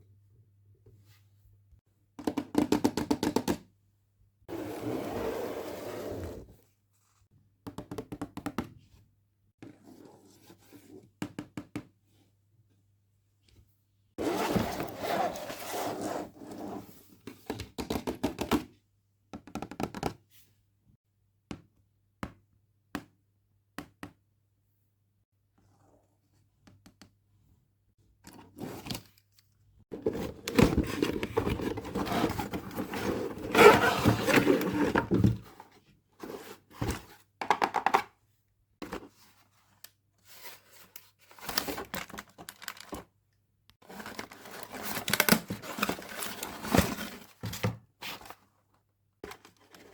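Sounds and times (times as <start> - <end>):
packaging crinkling and tearing: 41.6 - 43.0.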